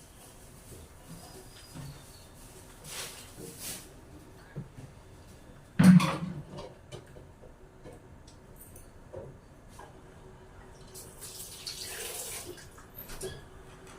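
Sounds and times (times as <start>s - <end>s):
dish set down with clunk: 5.8s - 6.7s.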